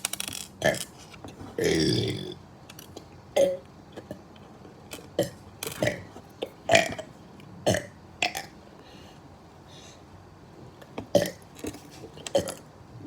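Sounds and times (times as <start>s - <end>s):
person burping: 1.6s - 2.4s, 11.2s - 11.4s, 12.3s - 12.6s.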